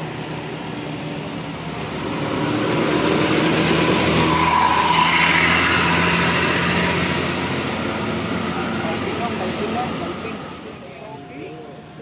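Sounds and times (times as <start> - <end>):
bus passing by: 0.0 - 12.0.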